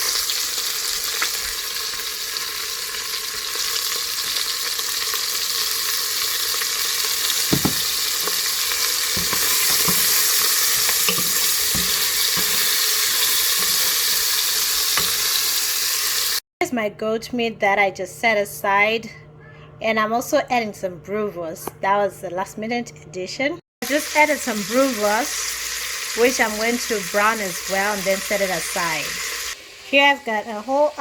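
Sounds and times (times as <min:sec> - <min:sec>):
meat sizzling in hot oil: 0:00.0 - 0:16.4, 0:23.8 - 0:31.0
utensil knocking in pan: 0:07.4 - 0:08.3, 0:09.1 - 0:12.7.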